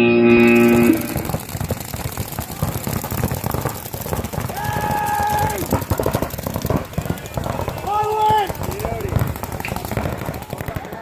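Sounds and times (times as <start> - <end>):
paintball markers firing: 0.6 - 11.0
person shouting: 4.5 - 5.7.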